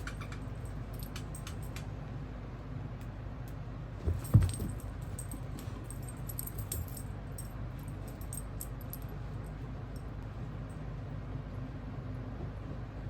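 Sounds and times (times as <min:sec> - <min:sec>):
dull thump: 0:04.0 - 0:05.0
light metallic jingling: 0:04.0 - 0:09.1.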